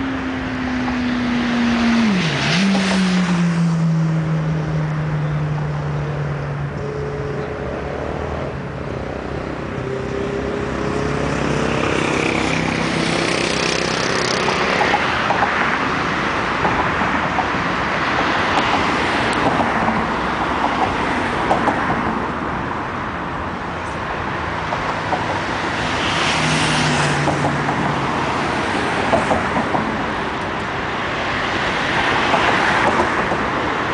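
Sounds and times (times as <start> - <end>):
cars passing: 0.0 - 33.9
engine hum: 0.0 - 33.9.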